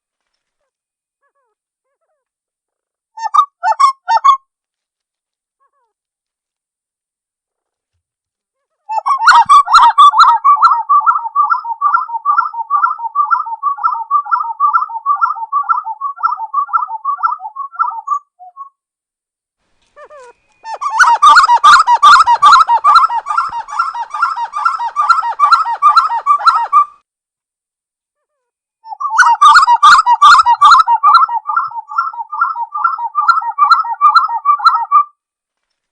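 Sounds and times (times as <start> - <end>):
quail singing rolling notes: 3.2 - 4.4, 8.9 - 18.6, 19.8 - 27.0, 28.9 - 35.1.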